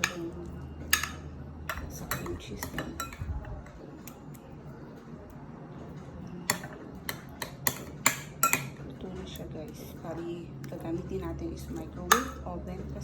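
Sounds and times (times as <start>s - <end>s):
kitchen utensils and dishes clicking: 0.0s - 4.4s, 6.5s - 9.5s, 11.8s - 12.4s
low steady hum: 0.0s - 13.0s.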